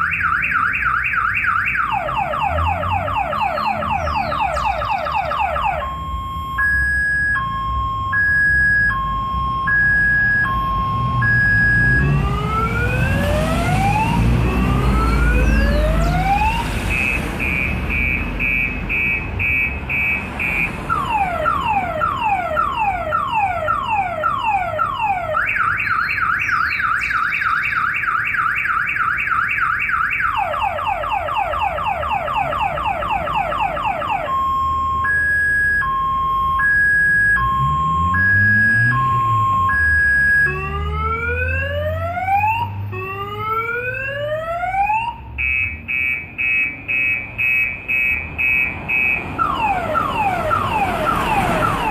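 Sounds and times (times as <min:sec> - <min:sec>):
car alarm siren: 0:00.0 - 0:51.9.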